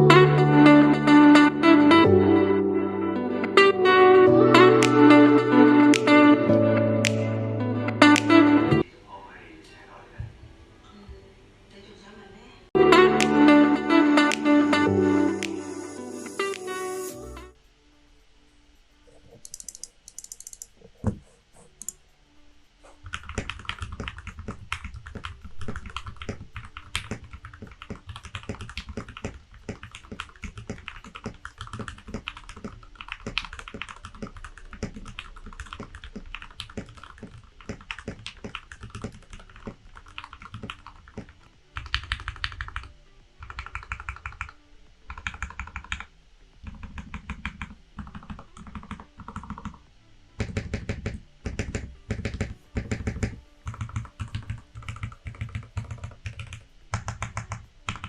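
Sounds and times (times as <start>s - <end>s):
mechanical keyboard typing: 19.4s - 20.8s, 23.1s - 49.8s, 50.4s - 58.0s.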